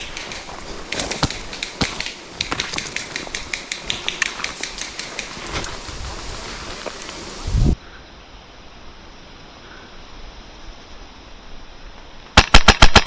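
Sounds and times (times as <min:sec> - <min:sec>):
rapid sharp clicks and cracks: 0:00.0 - 0:05.8, 0:12.4 - 0:13.0
low steady hiss: 0:03.2 - 0:13.0.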